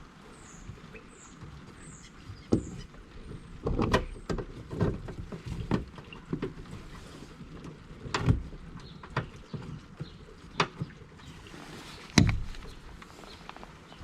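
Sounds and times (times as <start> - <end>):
bird chirping: 0.3 - 3.5.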